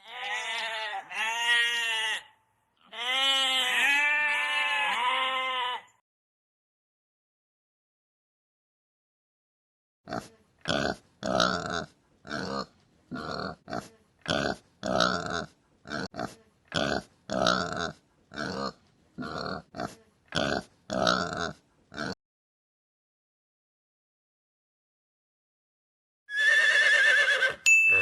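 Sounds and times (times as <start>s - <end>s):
pig grunting: 10.1s - 22.2s.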